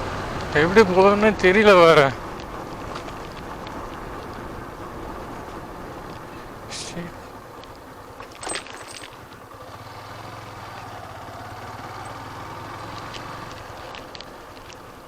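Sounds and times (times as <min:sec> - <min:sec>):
motorcycle engine running: 0:00.0 - 0:15.0
brief rattle: 0:08.2 - 0:09.4.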